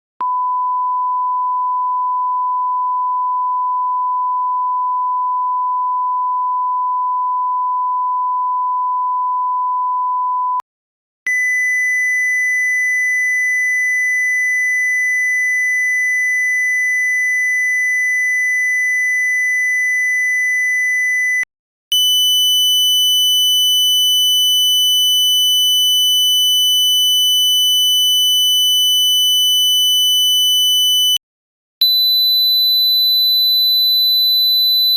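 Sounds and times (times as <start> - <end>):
pure sine tone: 0.2 - 10.6.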